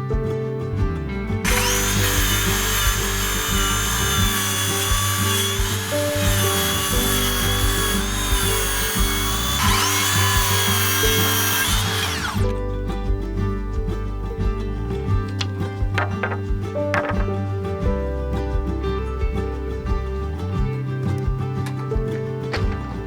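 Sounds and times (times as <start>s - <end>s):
background music: 0.0s - 23.0s
electric power tool motor: 1.5s - 12.5s.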